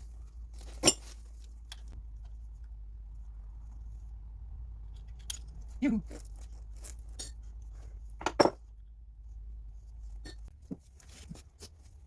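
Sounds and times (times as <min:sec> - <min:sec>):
metal tools clinking and knocking: 0:00.6 - 0:01.9, 0:08.2 - 0:08.6.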